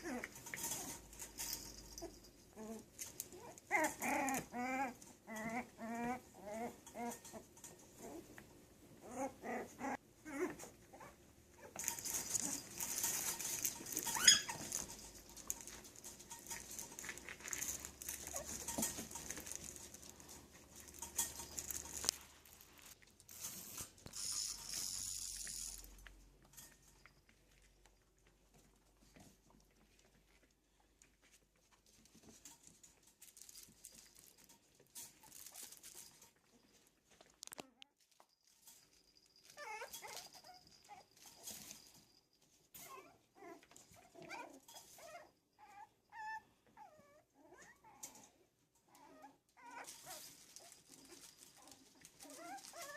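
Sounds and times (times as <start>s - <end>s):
puppies rustling and scuffling: 0.0s - 52.9s
puppies yipping: 13.8s - 14.9s.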